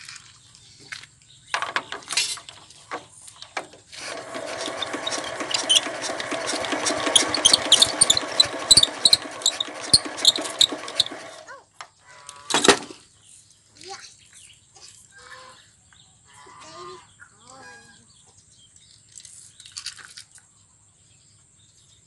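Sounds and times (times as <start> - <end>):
diesel engine cranking: 3.8 - 11.5.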